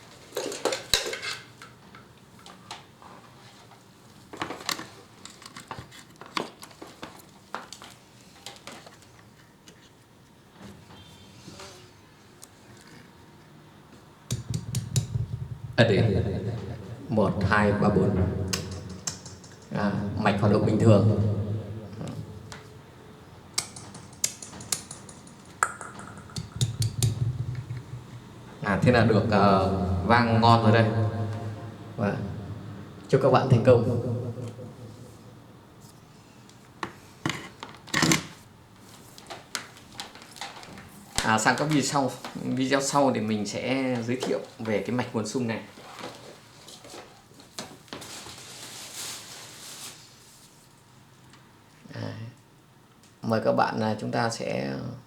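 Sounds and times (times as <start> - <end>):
sharp clicks and knocks: 14.3 - 15.8, 18.5 - 19.7, 23.6 - 28.2.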